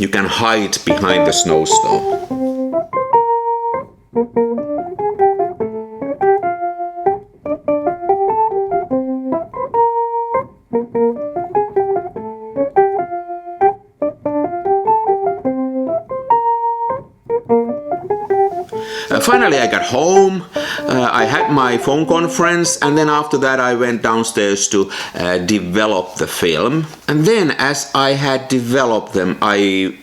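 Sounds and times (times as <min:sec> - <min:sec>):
keyboard playing quick notes: 0:00.9 - 0:23.6.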